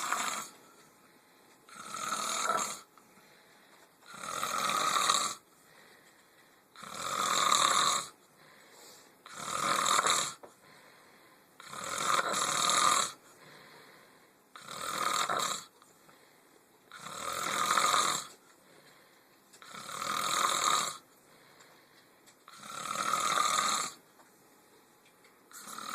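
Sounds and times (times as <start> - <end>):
loud snoring: 0.0 - 0.6, 1.7 - 2.9, 4.0 - 5.5, 6.8 - 8.2, 9.2 - 10.5, 11.6 - 13.2, 14.5 - 15.8, 16.9 - 18.4, 19.6 - 21.1, 22.5 - 24.0, 25.5 - 25.9.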